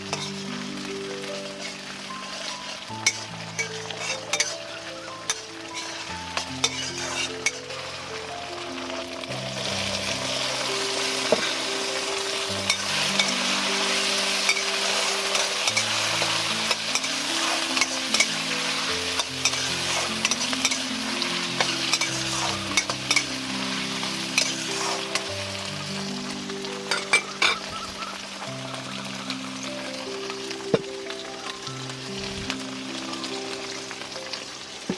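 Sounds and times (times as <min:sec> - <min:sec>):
food sizzling in a pan: 0:00.0 - 0:34.9
utensil scraping a pan: 0:00.1 - 0:00.4, 0:01.4 - 0:07.8, 0:11.2 - 0:11.7, 0:12.6 - 0:25.3.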